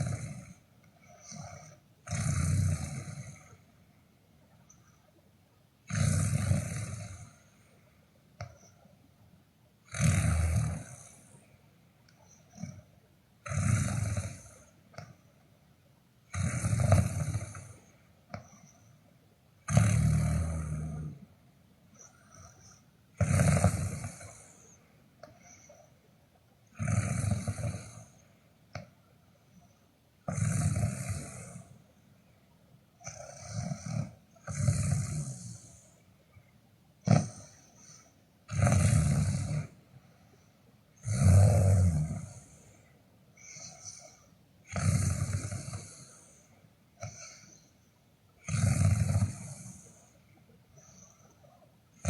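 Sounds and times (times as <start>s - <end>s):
person snoring: 0.0s - 3.6s, 5.9s - 7.4s, 9.9s - 11.3s, 13.4s - 15.1s, 16.3s - 17.8s, 19.7s - 21.2s, 22.0s - 24.8s, 26.7s - 28.2s, 30.3s - 31.7s, 33.0s - 35.8s, 37.1s - 39.7s, 41.0s - 42.6s, 43.4s - 46.4s, 48.4s - 50.1s.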